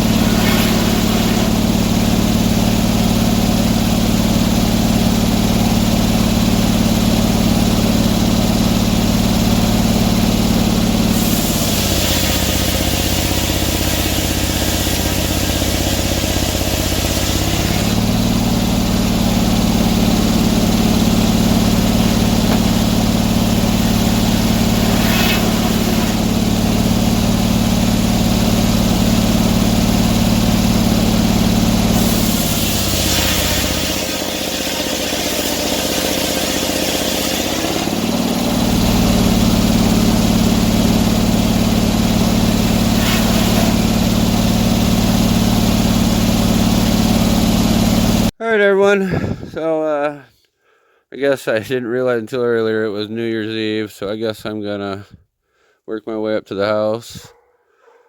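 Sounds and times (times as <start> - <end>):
sawmill engine running: 0.0 - 48.3
hiss: 0.2 - 1.5, 24.6 - 26.2, 42.9 - 43.8.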